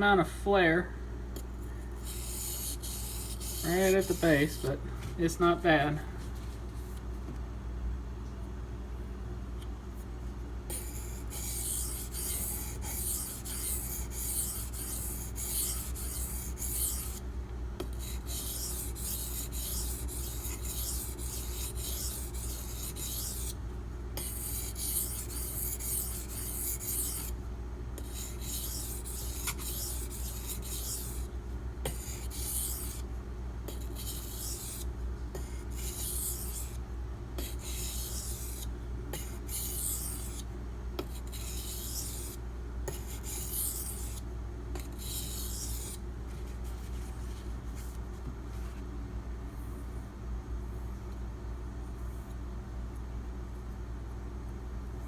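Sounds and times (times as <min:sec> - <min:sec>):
knife scraping on whetstone: 0:02.0 - 0:04.7, 0:10.7 - 0:17.2, 0:17.8 - 0:23.6, 0:24.2 - 0:27.4, 0:28.0 - 0:31.3, 0:31.9 - 0:33.0, 0:33.7 - 0:36.8, 0:37.4 - 0:40.4, 0:41.0 - 0:44.2, 0:44.8 - 0:46.0.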